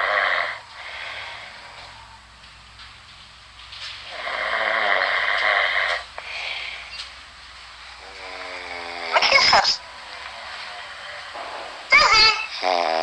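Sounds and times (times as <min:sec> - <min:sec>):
person snoring: 0:00.0 - 0:01.8, 0:04.1 - 0:06.8, 0:08.0 - 0:09.4, 0:12.5 - 0:13.0.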